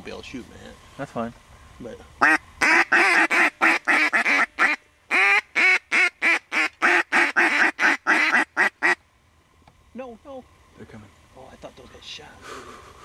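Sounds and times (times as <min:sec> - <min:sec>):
duck call quacking: 0:02.2 - 0:09.0.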